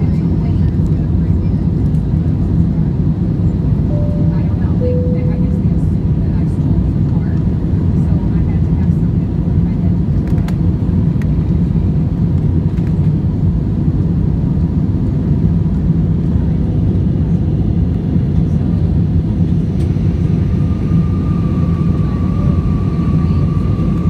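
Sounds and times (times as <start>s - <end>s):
jet engines rumbling: 0.0s - 24.0s.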